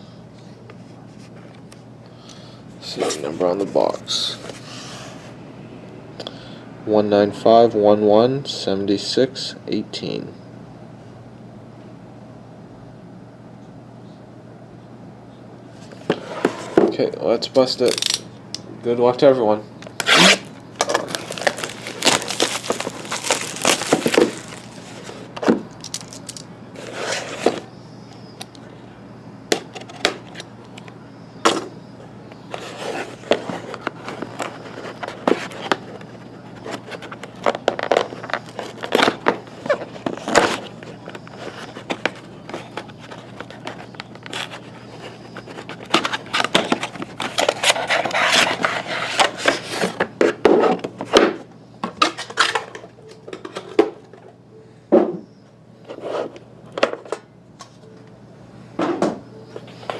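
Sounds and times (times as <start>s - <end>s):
faint steady hum: 0.0s - 59.9s
cardboard and plastic rustling: 19.9s - 27.7s, 32.5s - 53.8s.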